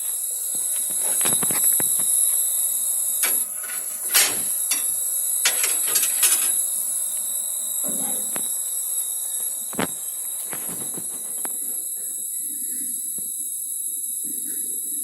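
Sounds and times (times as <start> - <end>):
laser cutter high-pitched whine: 0.0 - 15.0
irregular clicks and knocks: 3.2 - 6.6.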